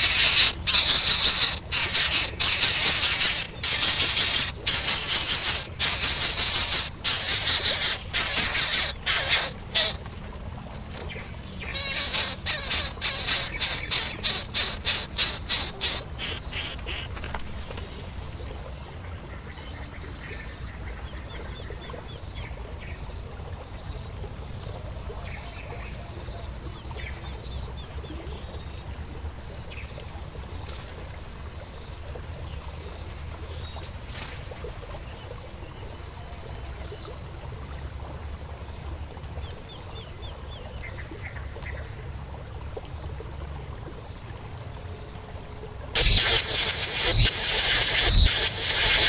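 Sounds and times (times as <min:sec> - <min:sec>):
bird chirping: 0:00.0 - 0:10.0, 0:11.6 - 0:17.1
insects droning: 0:00.0 - 0:40.9, 0:42.1 - 0:49.0.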